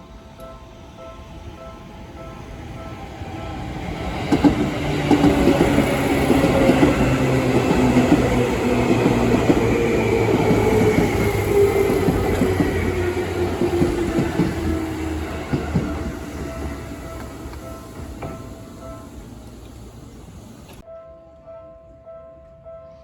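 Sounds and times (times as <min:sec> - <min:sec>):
train motor whine: 0:02.0 - 0:20.8
wheels clattering over rail joints: 0:02.6 - 0:20.8.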